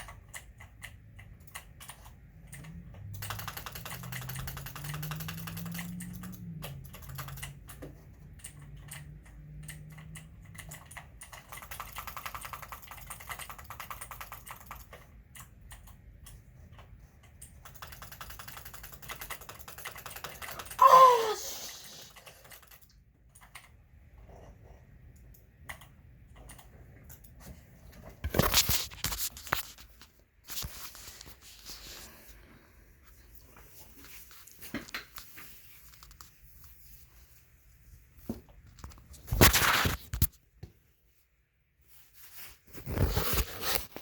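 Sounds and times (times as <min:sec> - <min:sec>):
fast typing on a keyboard: 0:00.0 - 0:21.2, 0:21.8 - 0:23.9.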